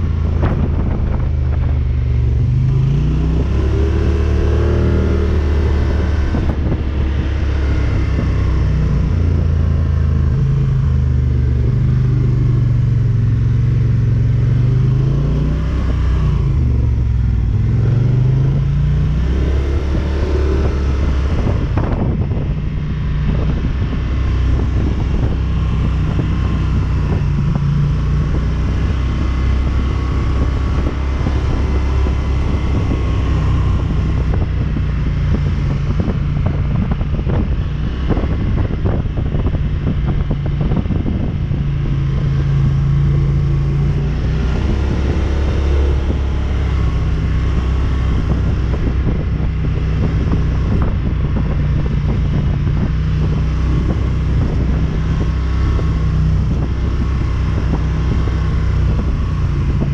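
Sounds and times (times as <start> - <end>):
atv engine running: 0.0 - 59.9.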